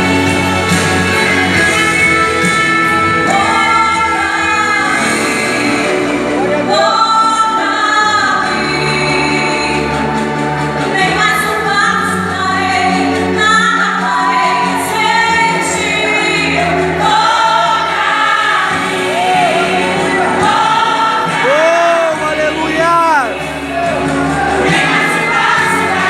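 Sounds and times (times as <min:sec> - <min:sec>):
vocal group singing gospel: 0:00.0 - 0:26.0
instrumental backing with bass: 0:14.8 - 0:26.0.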